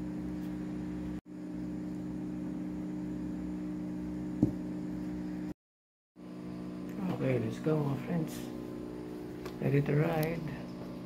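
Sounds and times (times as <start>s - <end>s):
steady hum: 0.0s - 5.6s, 6.2s - 11.0s.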